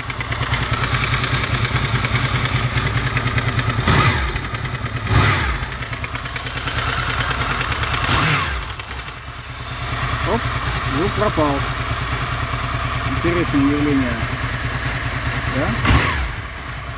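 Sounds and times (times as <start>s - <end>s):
motorcycle engine revving: 0.0s - 16.9s.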